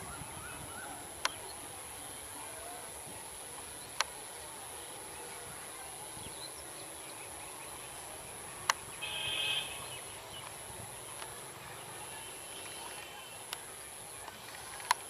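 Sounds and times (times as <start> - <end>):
insects buzzing: 0.0 - 15.0.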